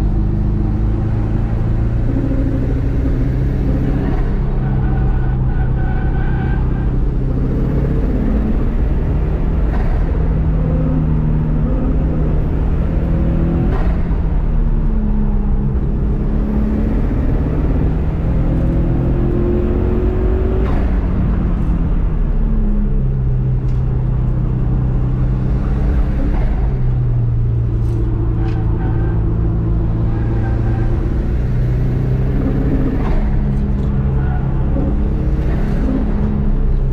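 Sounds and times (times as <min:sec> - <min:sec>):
race car engine revving: 0:00.0 - 0:22.4, 0:23.3 - 0:36.9.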